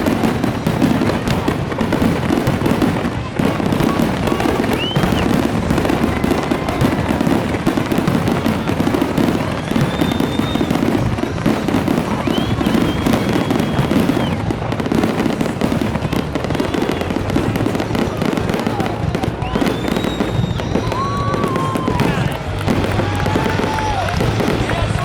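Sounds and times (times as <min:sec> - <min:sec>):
fireworks bangs and crackles: 0:00.0 - 0:25.0
fireworks whistling: 0:00.0 - 0:25.0.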